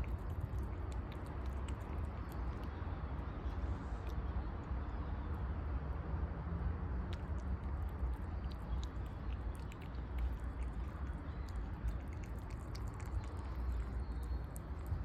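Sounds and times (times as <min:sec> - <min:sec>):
cat chewing food: 0:00.0 - 0:04.2, 0:07.1 - 0:15.0
steady low rumble: 0:00.0 - 0:15.0.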